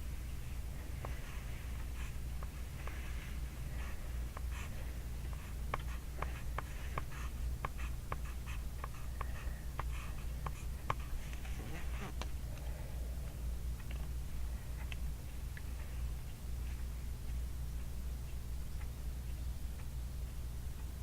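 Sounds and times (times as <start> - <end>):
low hum: 0.0 - 21.0
pencil scratching on paper: 0.9 - 12.2.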